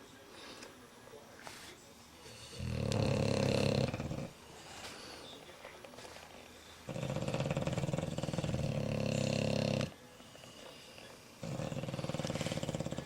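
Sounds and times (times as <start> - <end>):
dog snoring: 2.3 - 4.4, 6.9 - 13.0.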